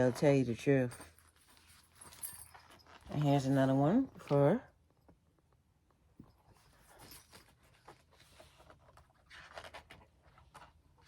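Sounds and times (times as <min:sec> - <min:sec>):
magazine pages rustling: 0:07.2 - 0:11.0.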